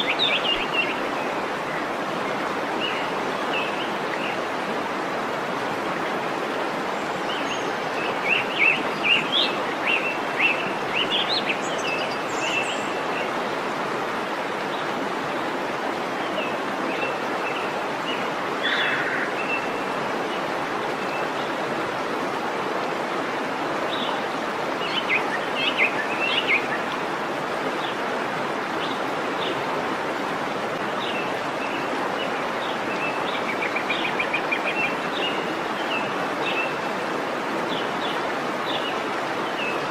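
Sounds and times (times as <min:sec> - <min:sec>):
waterfall rushing: 0:00.0 - 0:39.9
birds chirping: 0:16.3 - 0:20.5.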